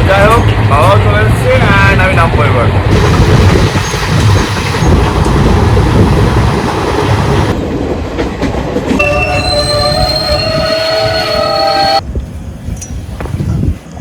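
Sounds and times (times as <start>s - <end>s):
train rumbling and rattling: 0.0s - 14.0s
train wheels squealing: 9.0s - 12.0s.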